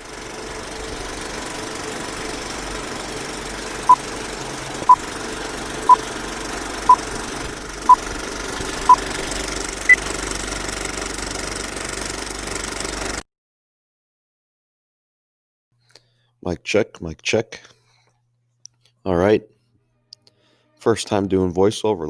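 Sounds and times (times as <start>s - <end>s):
mechanical rattling whirr: 0.0s - 13.2s.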